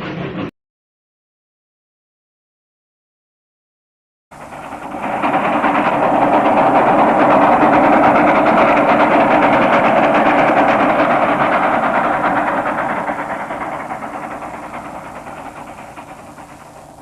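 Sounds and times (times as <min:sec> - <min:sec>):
loud rattling machine noise: 0:04.3 - 0:17.0.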